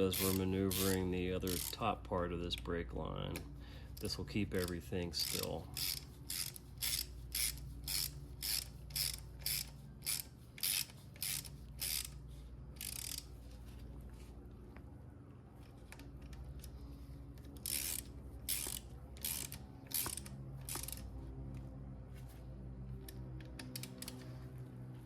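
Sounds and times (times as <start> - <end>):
ratchet wrench clicking: 0.0 - 13.5, 17.4 - 21.1, 23.0 - 24.4
steady low hum: 0.0 - 25.0.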